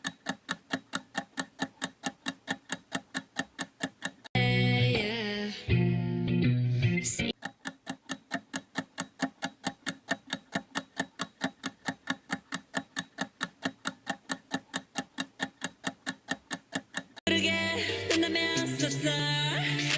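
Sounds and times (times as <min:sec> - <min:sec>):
fast even ticking: 0:00.0 - 0:04.4, 0:07.3 - 0:17.3
music with singing: 0:04.4 - 0:07.3, 0:17.3 - 0:19.9.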